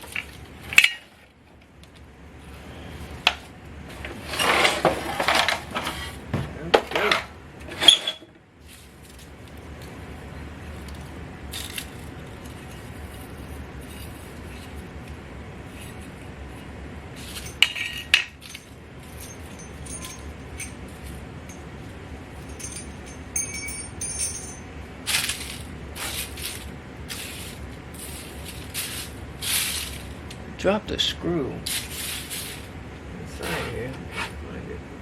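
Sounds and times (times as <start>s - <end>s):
metal parts clicking and clinking: 17.2s - 21.7s, 22.4s - 25.6s.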